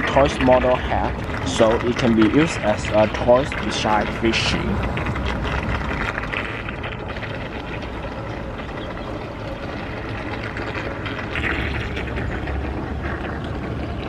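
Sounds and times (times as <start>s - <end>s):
water splashing: 0.0s - 14.0s.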